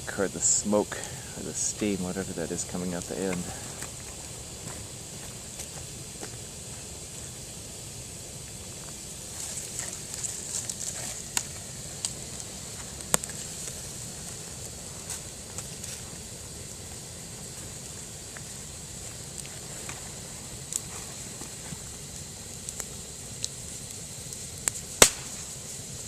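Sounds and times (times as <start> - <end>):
campfire crackling and sizzling: 0.0 - 26.0
sharp crack from fire: 0.0 - 26.0
small snaps of burning wood: 0.4 - 1.7, 2.6 - 7.5, 8.4 - 26.0.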